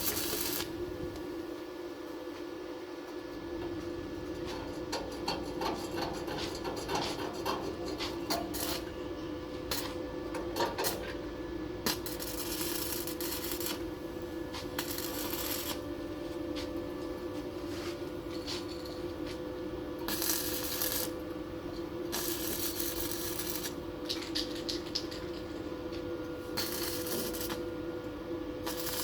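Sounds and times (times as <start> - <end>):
steady hum: 0.0 - 29.0.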